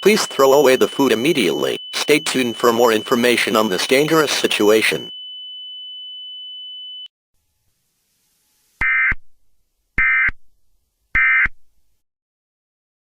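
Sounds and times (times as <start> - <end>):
steady high electronic tone: 0.0 - 5.1.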